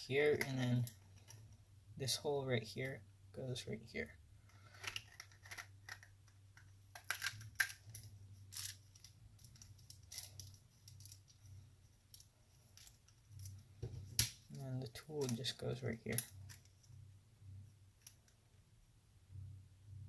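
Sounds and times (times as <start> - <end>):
faint low hum: 0.0 - 20.0
plastic pieces clicking: 4.7 - 11.2.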